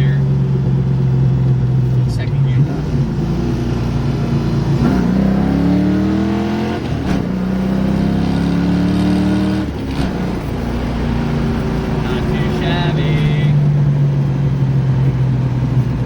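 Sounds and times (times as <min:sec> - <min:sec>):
car engine accelerating through gears: 0:00.0 - 0:16.0.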